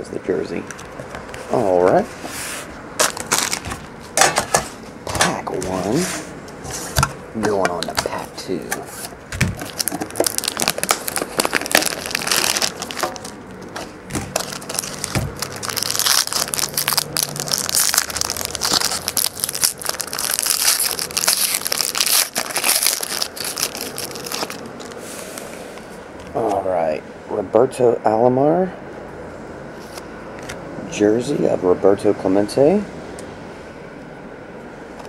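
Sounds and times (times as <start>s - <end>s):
wrapper tearing and crinkling: 3.0s - 3.9s, 9.5s - 25.0s.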